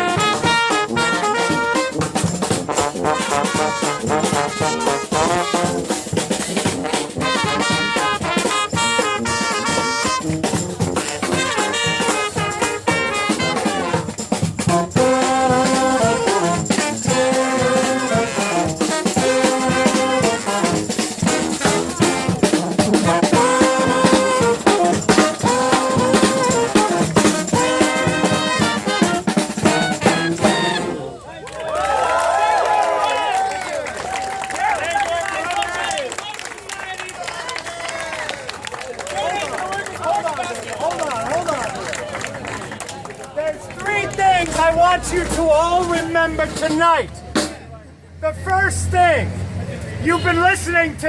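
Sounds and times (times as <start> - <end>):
steady drum beat: 0.0 - 31.0, 43.8 - 47.7
brass band horns playing: 0.0 - 31.3, 43.7 - 47.6, 50.0 - 50.8.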